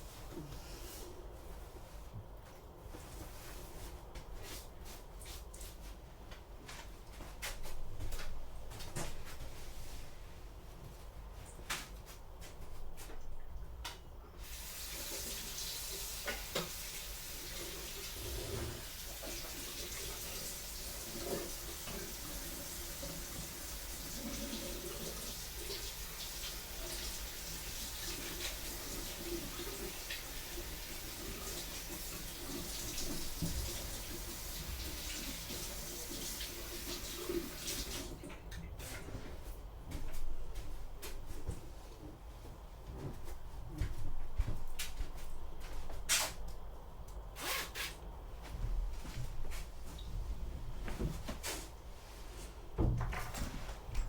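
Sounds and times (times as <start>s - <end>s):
knocks and rustles: 48.5s - 51.8s, 52.7s - 54.0s.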